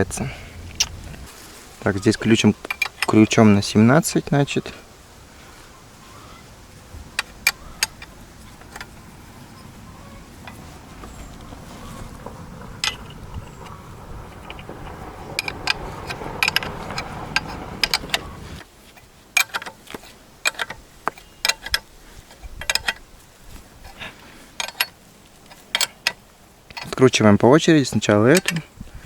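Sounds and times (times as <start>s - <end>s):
steady low rumble: 0.0s - 18.6s.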